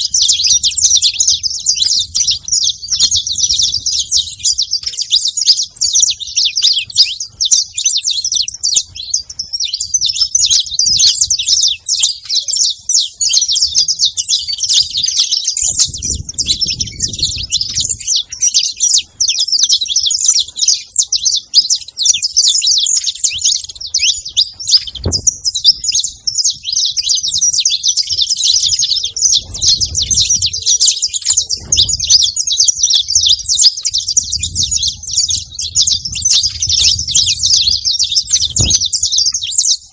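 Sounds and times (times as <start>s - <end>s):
finches chirping: 0.0s - 39.9s.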